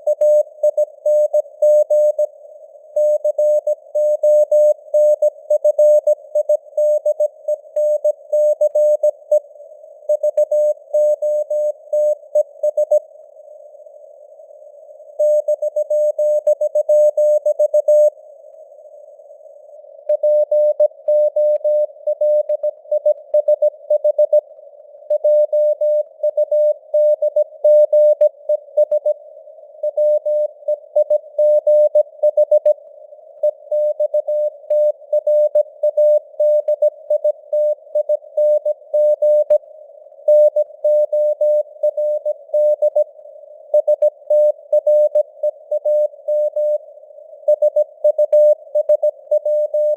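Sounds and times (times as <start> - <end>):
morse code tone: 47.5 - 49.9.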